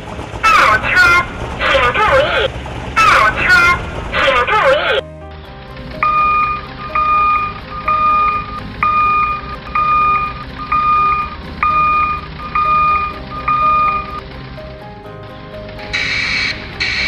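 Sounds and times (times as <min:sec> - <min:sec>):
backup alarm beeping: 0:06.0 - 0:14.3.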